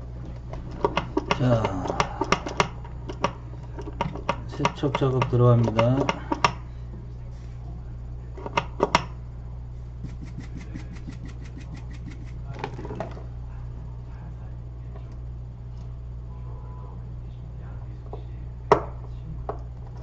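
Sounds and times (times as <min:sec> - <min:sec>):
low hum of bench equipment: 0:00.0 - 0:20.0
quick even brushing strokes: 0:10.0 - 0:12.5.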